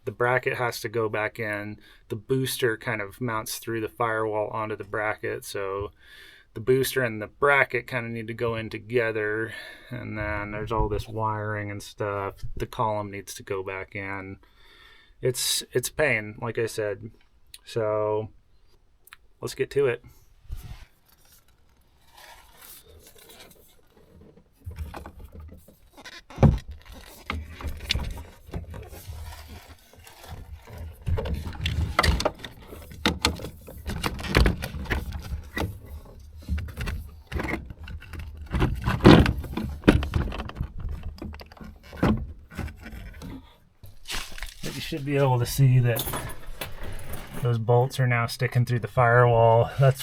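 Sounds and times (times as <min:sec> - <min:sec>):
metal clinks knocks and scrapes: 0:45.9 - 0:47.6.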